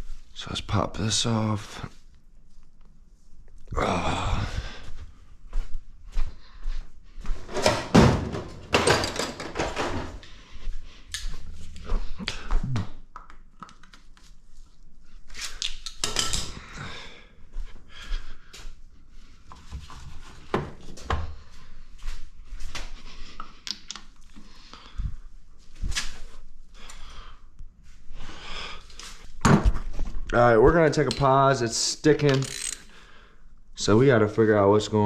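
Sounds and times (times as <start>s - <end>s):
hand tools and metal parts clunking: 7.4s - 10.2s, 15.9s - 16.6s.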